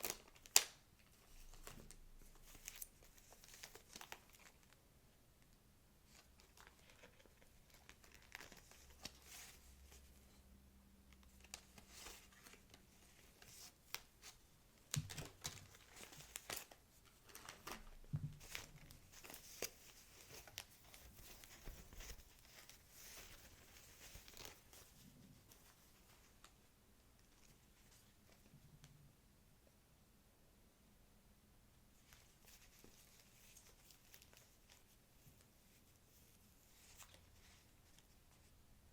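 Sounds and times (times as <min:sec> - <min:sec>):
packaging crinkling and rustling: 0:00.0 - 0:04.8, 0:06.1 - 0:09.9, 0:11.2 - 0:26.5.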